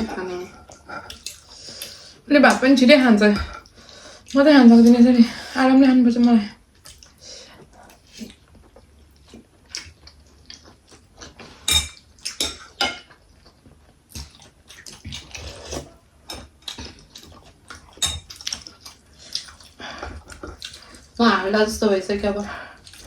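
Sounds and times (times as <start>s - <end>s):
cutlery clinking on plates: 11.6s - 13.1s, 18.0s - 18.4s.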